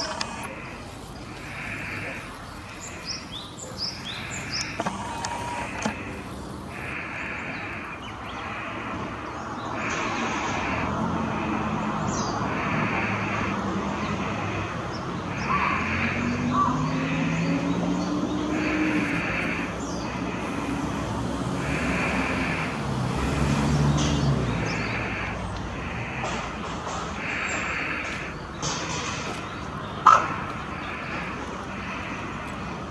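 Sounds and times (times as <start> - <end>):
harsh hissing: 0.0 - 32.9
road traffic rumble: 0.0 - 32.9
vehicle engine passing: 8.5 - 32.9.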